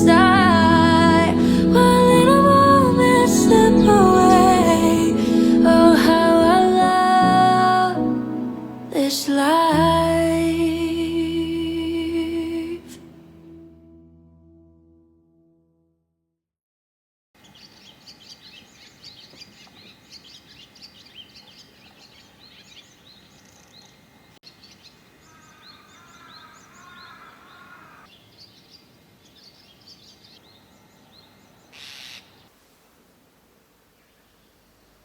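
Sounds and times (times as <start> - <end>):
small birds chirping: 17.4 - 32.5.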